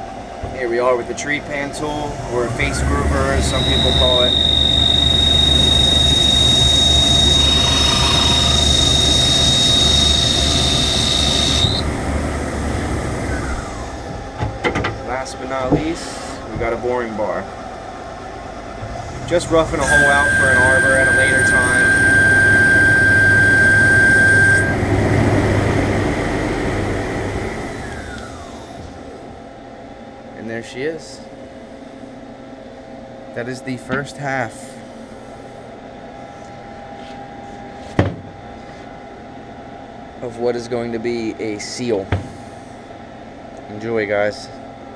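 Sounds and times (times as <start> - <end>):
machine low hum: 0.0 - 44.9
lathe cutting whine: 1.6 - 14.4, 18.6 - 29.3.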